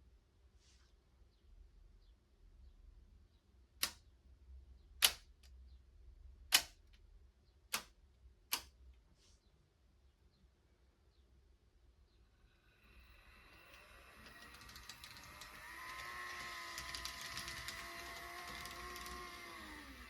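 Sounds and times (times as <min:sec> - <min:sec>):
model train turntable clicking: 0:05.0 - 0:05.2, 0:12.7 - 0:20.0.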